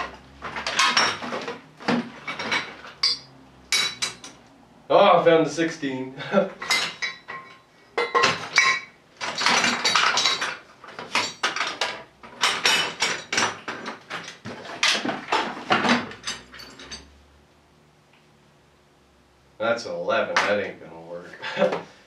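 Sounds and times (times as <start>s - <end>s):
metal tools clinking: 2.2s - 4.4s, 6.6s - 17.2s.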